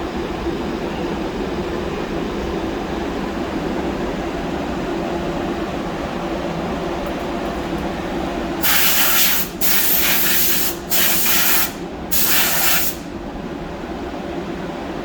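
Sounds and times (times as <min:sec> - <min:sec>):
compressed air hissing bursts: 0:08.6 - 0:13.1.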